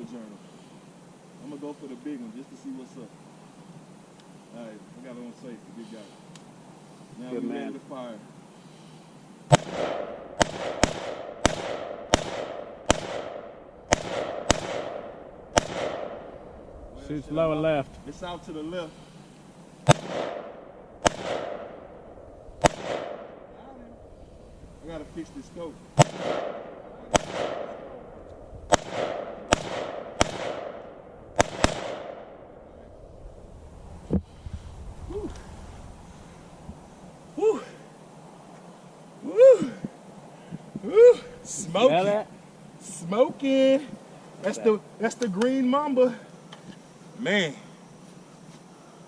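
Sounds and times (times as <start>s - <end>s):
rifle gunshots echoing: 9.5s - 16.7s, 19.8s - 23.6s, 26.0s - 32.8s.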